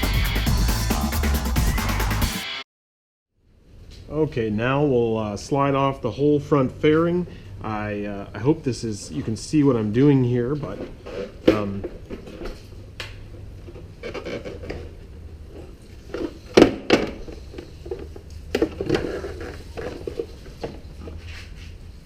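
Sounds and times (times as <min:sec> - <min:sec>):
plastic rubbing: 0:13.3 - 0:21.8.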